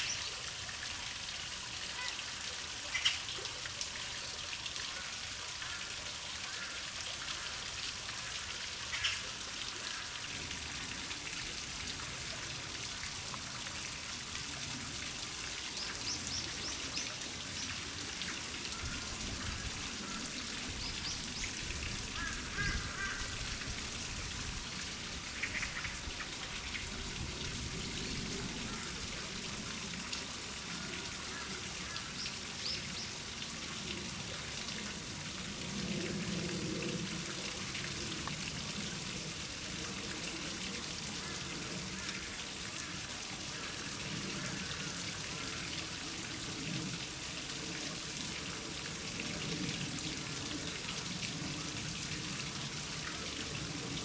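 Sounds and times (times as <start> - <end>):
rain pattering: 4.5 - 54.0.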